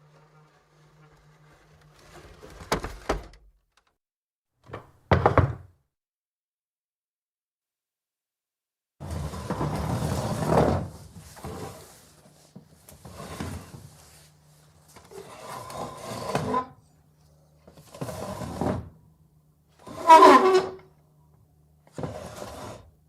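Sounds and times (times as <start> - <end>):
wooden chair scraping floor: 0.0 - 3.4, 9.0 - 16.8, 17.7 - 18.9, 19.8 - 20.8, 21.9 - 22.9.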